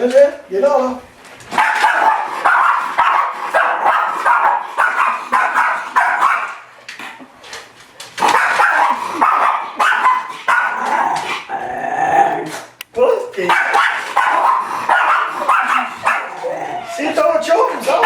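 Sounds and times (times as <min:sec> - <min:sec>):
dog barking: 0:01.5 - 0:06.6, 0:08.2 - 0:11.1, 0:13.4 - 0:16.5.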